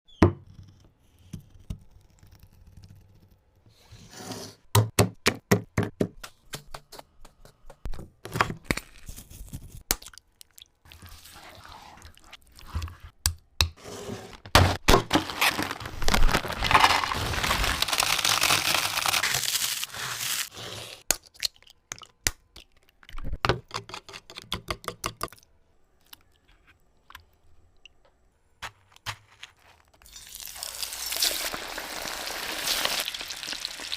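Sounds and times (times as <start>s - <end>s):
cracks knocks and scrapes: 28.6s - 30.1s.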